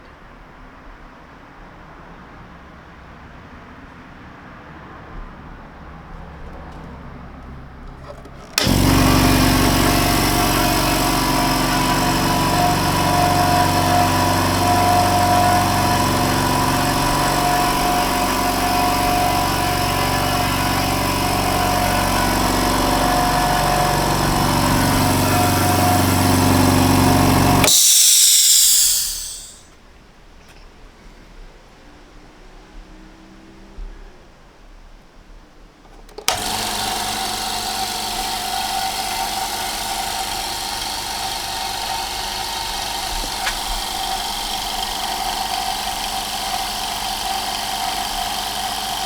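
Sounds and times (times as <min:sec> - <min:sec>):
air compressor running: 0:08.0 - 0:29.6, 0:36.3 - 0:49.0
air hissing out: 0:08.6 - 0:29.6, 0:36.3 - 0:49.0.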